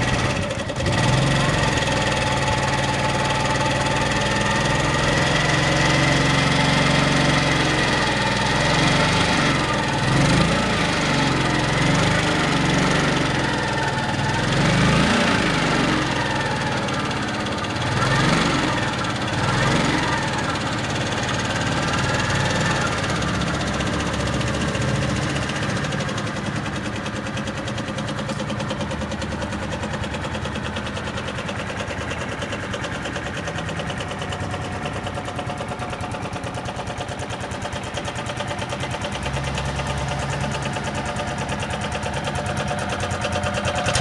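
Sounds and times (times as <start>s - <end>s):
scooter engine idling: 0.0s - 44.0s.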